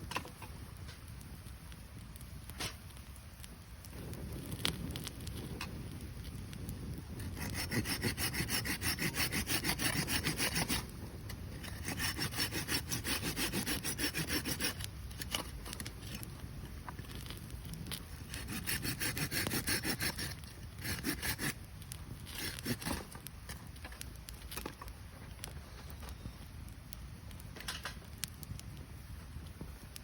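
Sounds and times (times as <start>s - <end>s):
hand saw cutting firewood: 7.2s - 16.2s, 17.8s - 21.6s, 22.2s - 23.2s.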